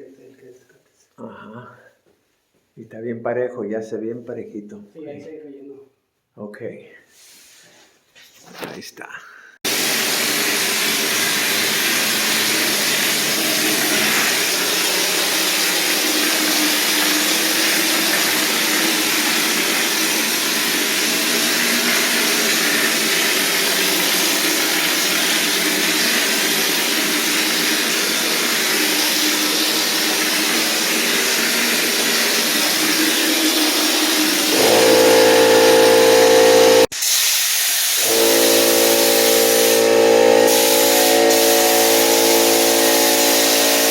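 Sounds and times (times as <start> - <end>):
texture spray gun hissing: 9.7 - 43.9
low machine hum: 34.6 - 36.9.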